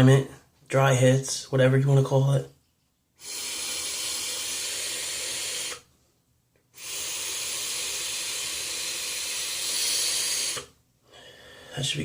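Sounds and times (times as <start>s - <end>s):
air hissing through vape: 3.2s - 5.9s, 6.8s - 10.8s.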